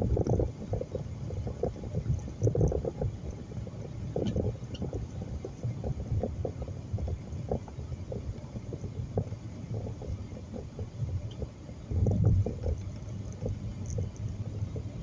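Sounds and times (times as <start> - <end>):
road and tyre noise: 0.0 - 15.0.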